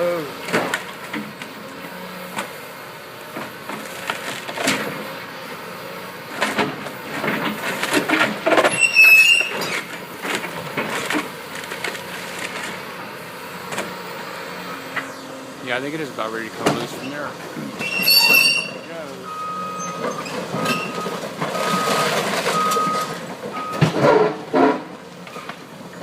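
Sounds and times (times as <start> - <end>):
excavator tearing at a bridge: 6.3 - 13.0, 15.1 - 26.0
high metal squeal: 8.6 - 9.8, 17.0 - 18.9
structure clunking and cracking: 20.0 - 26.0.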